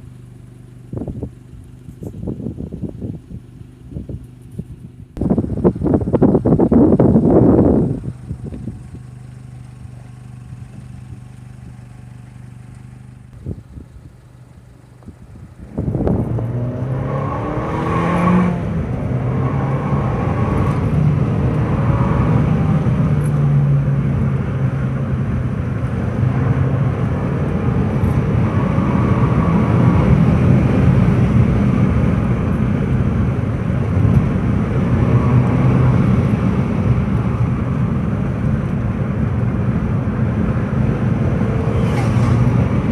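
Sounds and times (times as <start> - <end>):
car engine revving: 4.0 - 42.9.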